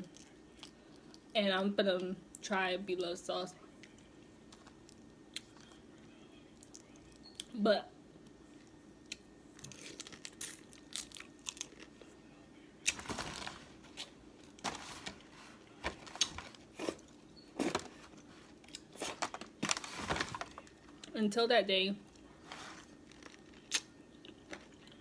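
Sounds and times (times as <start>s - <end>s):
seafood shells cracking: 9.6s - 11.9s.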